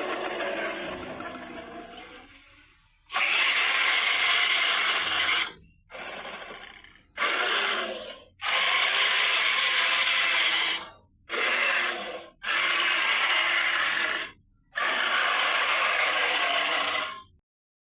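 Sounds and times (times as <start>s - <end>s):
creature rasping hisses: 4.9s - 17.4s.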